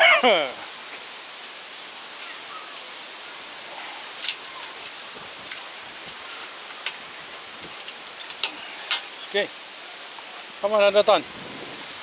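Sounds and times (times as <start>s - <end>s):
rustling leaves: 0.0s - 12.0s
wind through trees: 0.0s - 12.0s
light clicks and rattles: 4.2s - 7.0s.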